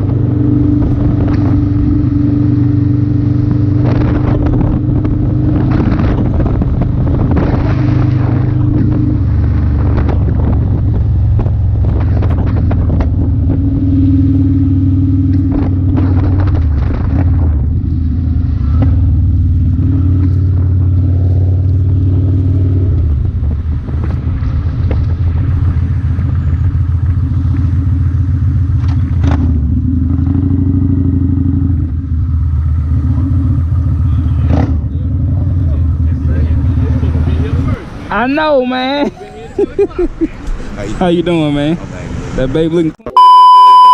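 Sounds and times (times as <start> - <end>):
wind rushing over microphone: 0.0 - 30.8
motorcycle engine running: 0.0 - 37.7.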